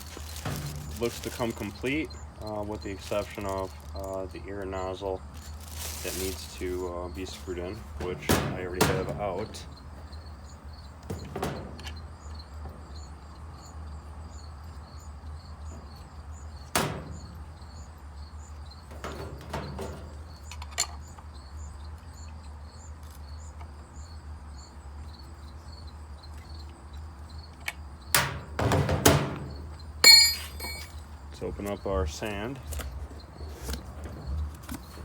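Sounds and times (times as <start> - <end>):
knocks and clicks of handled parts: 0.0 - 4.2, 7.2 - 10.2
faint insect chirping: 0.0 - 35.0.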